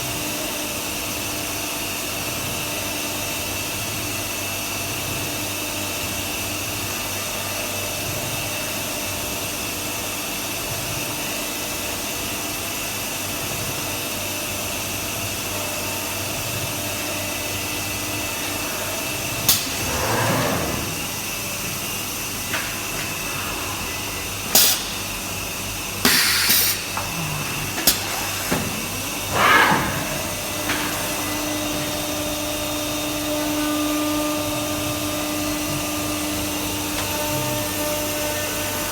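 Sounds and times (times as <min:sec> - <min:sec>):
router milling wood: 0:19.3 - 0:21.4.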